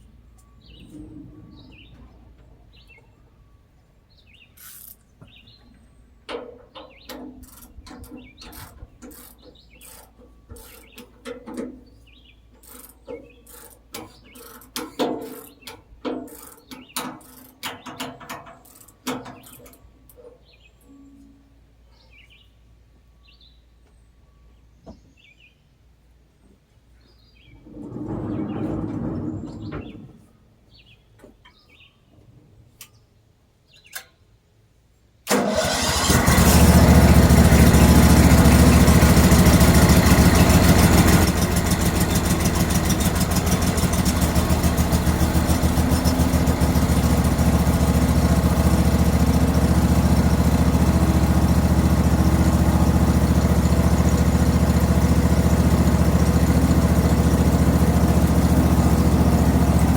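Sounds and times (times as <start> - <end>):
small gasoline engine running: 35.3 - 59.9.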